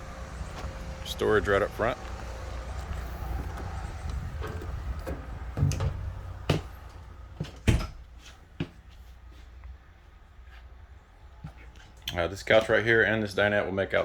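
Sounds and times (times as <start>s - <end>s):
low outdoor rumble: 0.0s - 14.0s
door knocks and thuds: 4.4s - 6.8s, 7.4s - 8.1s.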